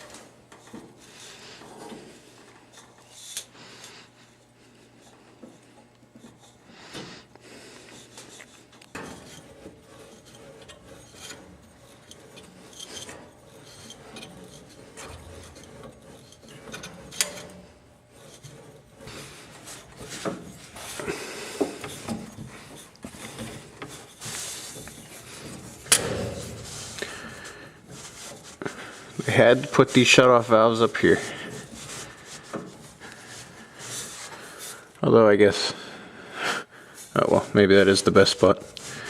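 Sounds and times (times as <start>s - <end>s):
hacksaw cutting metal pipe: 8.9s - 20.5s.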